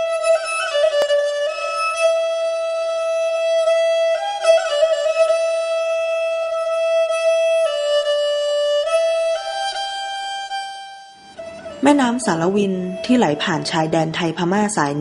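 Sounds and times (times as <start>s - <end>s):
held melody notes: 0.0s - 14.8s.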